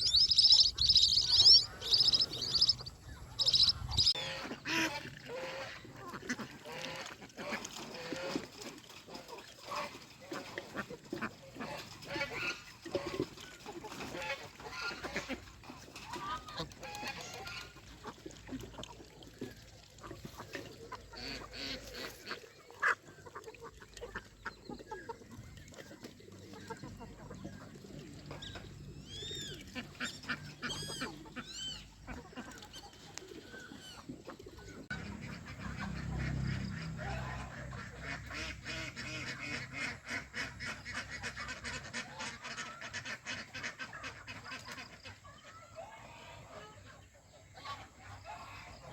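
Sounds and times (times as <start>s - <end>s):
geese honking: 0.0s - 8.4s, 28.3s - 45.2s
ducks quacking: 0.0s - 48.9s.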